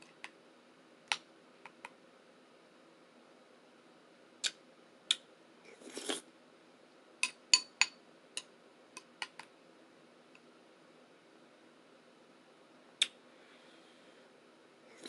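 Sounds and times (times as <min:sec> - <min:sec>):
spoon scraping a bowl: 0:05.7 - 0:06.2
spoon tapping a bowl: 0:07.2 - 0:08.5.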